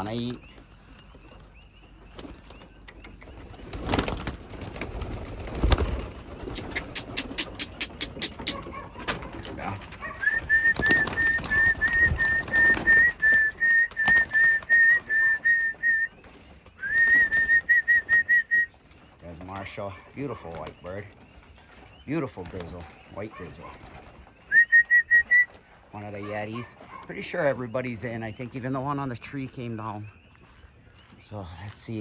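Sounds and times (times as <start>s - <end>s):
pigeons cooing: 0.0s - 28.7s
quick run of clicks: 2.2s - 18.6s
rapid pulsing whistle: 10.2s - 16.1s, 16.8s - 18.7s, 24.5s - 25.5s.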